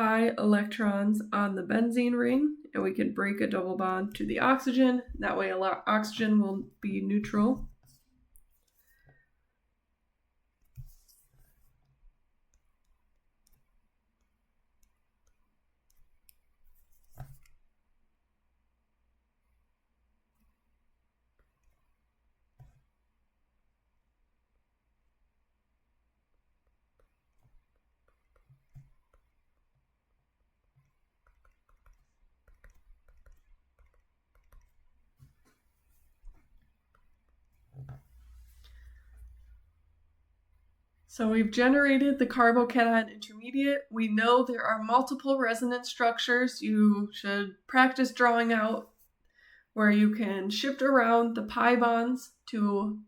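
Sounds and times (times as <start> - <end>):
faint drawing clicks and taps: 6.1 - 9.3, 10.5 - 17.8, 20.2 - 23.1, 26.2 - 39.6
pen clicks while drawing: 30.8 - 35.0.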